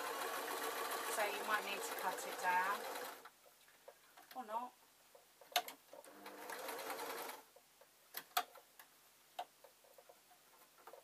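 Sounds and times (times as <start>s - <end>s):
sewing machine stitching: 0.0s - 3.3s, 6.0s - 7.4s.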